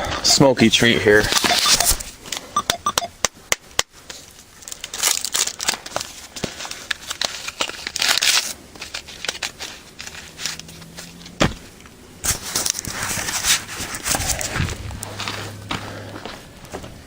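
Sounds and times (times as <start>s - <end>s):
rustling and crackling handling: 0.0s - 2.6s, 4.0s - 17.0s
scattered clicks: 1.3s - 2.0s, 2.6s - 3.1s.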